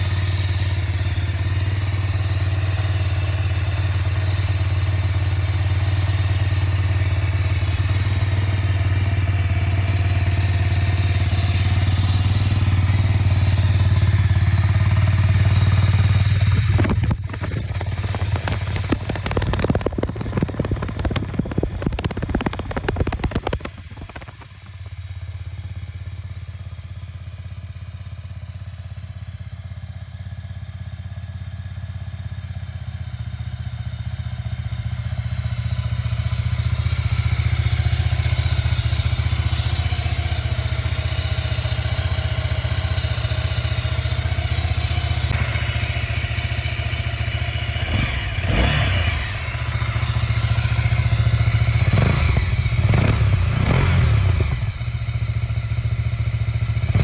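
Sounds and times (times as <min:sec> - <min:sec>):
motorcycle engine idling: 0:00.0 - 0:57.0.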